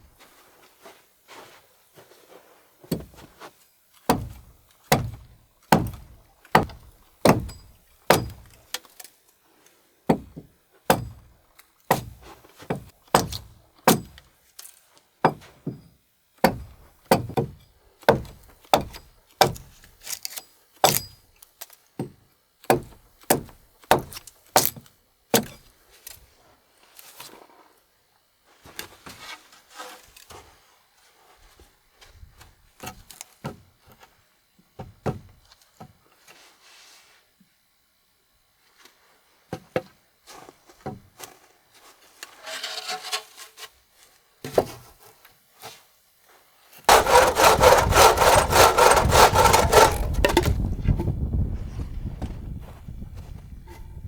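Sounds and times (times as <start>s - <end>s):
tool striking wood: 4.1s - 8.4s, 46.9s - 50.6s.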